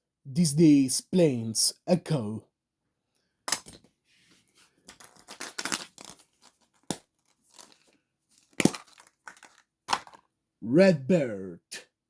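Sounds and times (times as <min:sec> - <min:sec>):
wrapper crinkling and tearing: 0:04.9 - 0:10.2.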